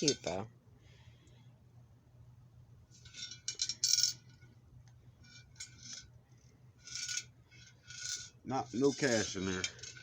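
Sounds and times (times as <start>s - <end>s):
coins rattling in piggy bank: 7.9s - 8.4s.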